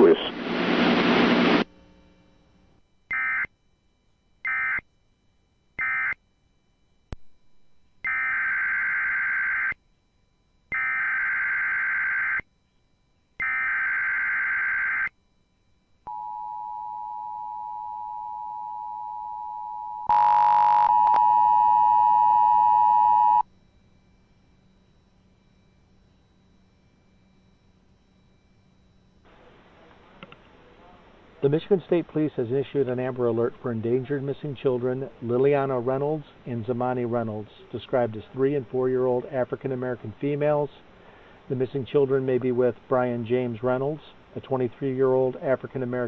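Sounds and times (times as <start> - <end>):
two-tone buzzing attention signal: 16.1 - 29.2.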